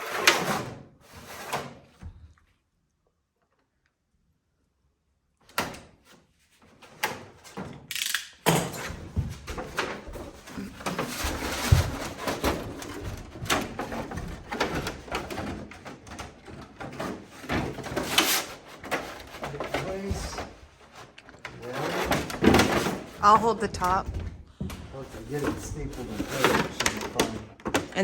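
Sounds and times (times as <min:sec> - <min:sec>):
rustling and knocks of handling: 0:08.5 - 0:28.0.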